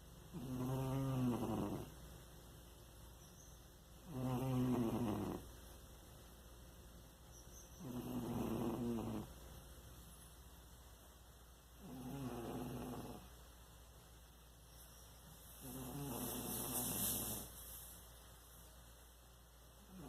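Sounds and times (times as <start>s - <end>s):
cat snoring loudly: 0.3s - 2.0s, 4.0s - 5.5s, 7.8s - 9.4s, 11.8s - 13.3s, 15.6s - 17.5s.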